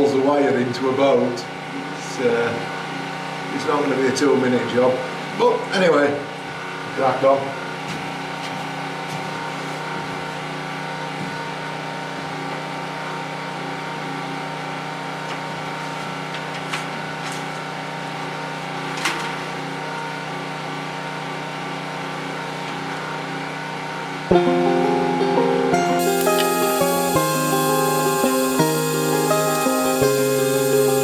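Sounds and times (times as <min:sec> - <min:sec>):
mechanical hum: 0:00.0 - 0:31.0
music: 0:24.3 - 0:31.0.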